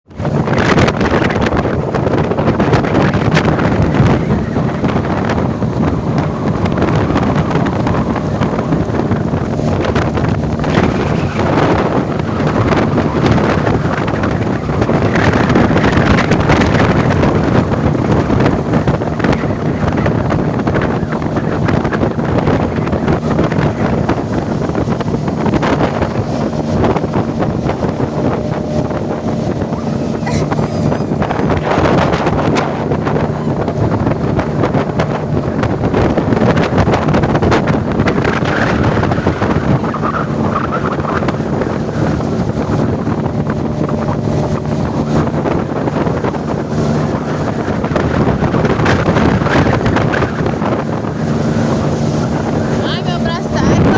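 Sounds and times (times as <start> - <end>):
boat engine droning: 0.0 - 53.9
wind buffeting microphone: 0.0 - 53.9.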